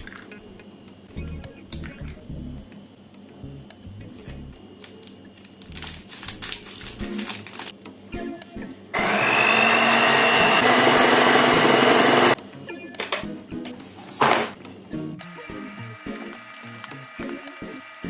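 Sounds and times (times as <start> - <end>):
electric blender motor whine: 9.0 - 12.4, 15.2 - 18.0.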